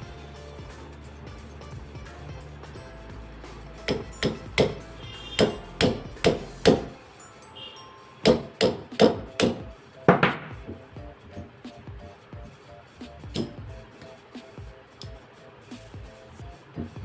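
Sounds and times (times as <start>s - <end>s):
hammer tapping pin punch: 3.8s - 4.8s, 5.4s - 6.9s, 8.3s - 10.8s, 13.3s - 13.7s.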